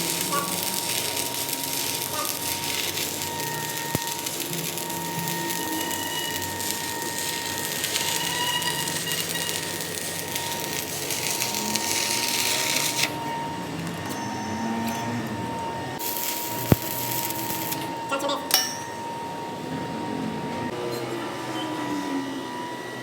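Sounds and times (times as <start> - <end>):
lathe cutting hiss: 0.0 - 13.4
lathe motor running: 0.0 - 18.1.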